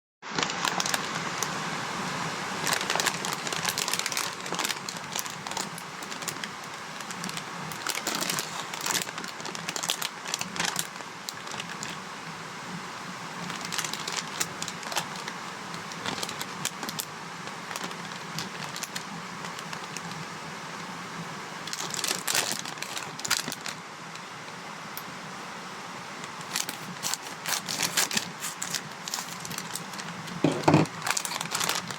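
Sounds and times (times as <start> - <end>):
plastic chip bag crinkling: 0.4 - 1.5, 2.6 - 12.0, 13.4 - 15.3, 15.9 - 17.1, 17.7 - 20.2, 21.7 - 23.8, 26.4 - 31.9.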